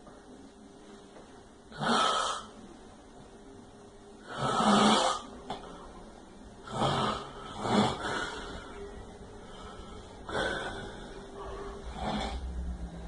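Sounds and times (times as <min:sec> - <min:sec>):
pig snoring: 0:01.7 - 0:02.5, 0:04.2 - 0:05.3, 0:06.6 - 0:08.6, 0:11.8 - 0:12.6.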